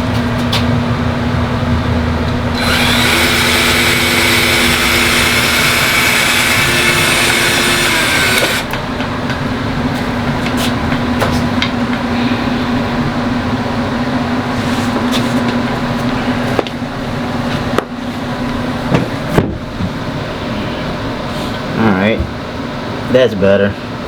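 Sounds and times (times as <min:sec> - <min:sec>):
low hum: 0:00.0 - 0:14.6
power tool cutting plastic: 0:02.6 - 0:08.8.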